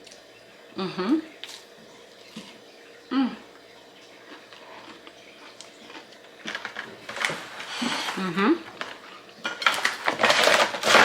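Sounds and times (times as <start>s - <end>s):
person humming mmm: 0.8s - 1.3s, 3.1s - 3.5s
crunching and chewing: 3.5s - 11.0s.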